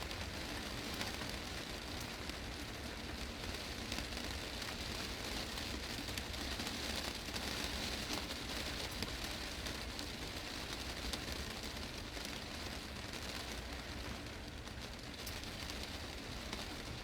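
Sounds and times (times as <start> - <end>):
heavy rain on glass roof: 0.0 - 17.0.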